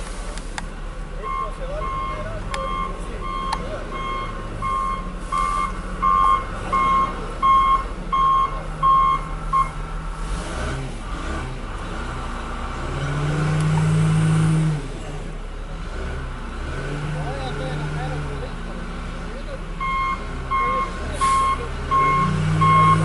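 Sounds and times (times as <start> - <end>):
backup alarm beeping: 1.2 - 9.8, 19.8 - 23.0.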